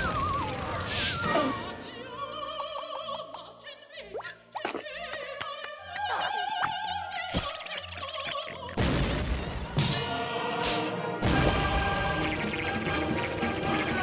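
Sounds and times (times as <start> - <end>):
sliding comic sound effects: 0.0 - 1.8
opera-style singing with vibrato: 0.0 - 8.8.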